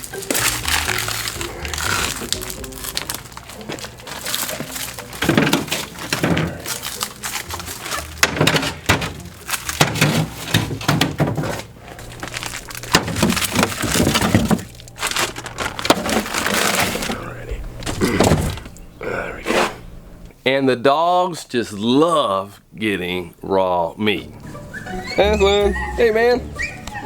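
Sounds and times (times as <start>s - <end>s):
frozen packages knocking together: 0.0s - 18.8s
plastic wrapping crackling: 0.0s - 18.8s.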